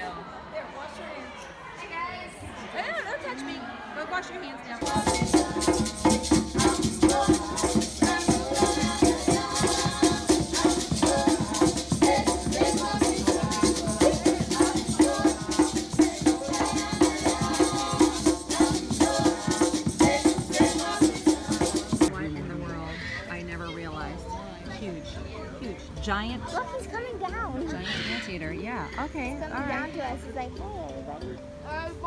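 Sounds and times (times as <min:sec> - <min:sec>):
upbeat music with shaker percussion: 0:04.8 - 0:25.1.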